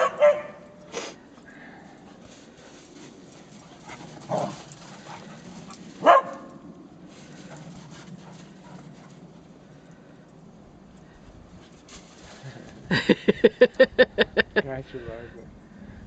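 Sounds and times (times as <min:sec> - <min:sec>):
dog barking: 0:00.0 - 0:00.6, 0:06.0 - 0:06.5.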